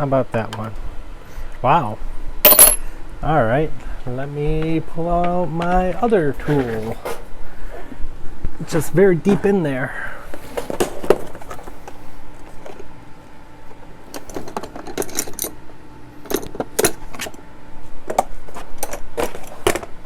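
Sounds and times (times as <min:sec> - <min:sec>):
metal hand tools clinking: 0:02.5 - 0:02.8.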